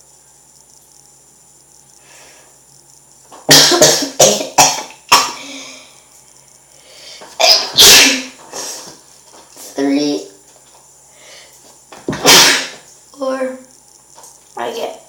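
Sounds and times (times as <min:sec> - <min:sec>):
sharp intake of breath: 0:02.0 - 0:02.6, 0:05.4 - 0:06.1, 0:06.7 - 0:09.0, 0:11.1 - 0:11.6
man coughing: 0:03.5 - 0:05.6
man sneezing: 0:03.5 - 0:05.7, 0:07.3 - 0:08.9, 0:12.1 - 0:12.8.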